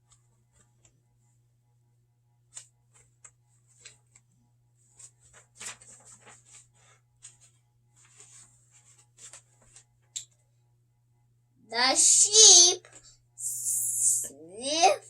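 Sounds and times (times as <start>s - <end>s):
book pages turning: 5.0s - 9.9s.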